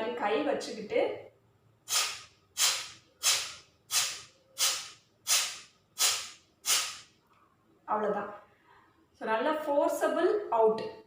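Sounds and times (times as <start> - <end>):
woman exhaling sharply through nose: 1.9 - 7.1.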